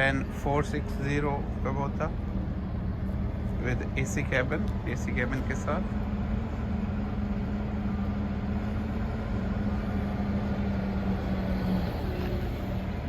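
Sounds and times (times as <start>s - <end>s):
engine rumbling: 0.0s - 13.0s.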